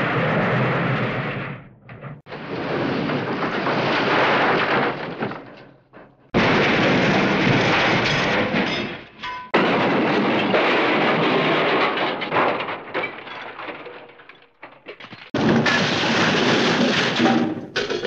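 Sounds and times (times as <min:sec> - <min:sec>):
cartoon crash of tumbling debris: 0:00.0 - 0:18.0.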